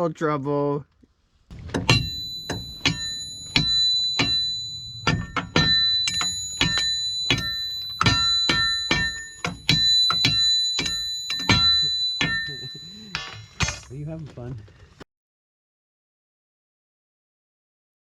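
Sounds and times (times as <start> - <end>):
hammer clanging on steel: 1.5 - 14.5.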